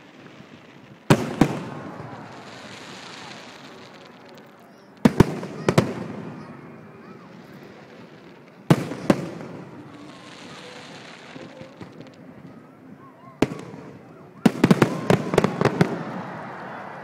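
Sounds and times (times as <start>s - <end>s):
fireworks bangs: 0.0s - 12.6s, 13.4s - 17.0s
fireworks hissing crackle: 0.0s - 12.8s.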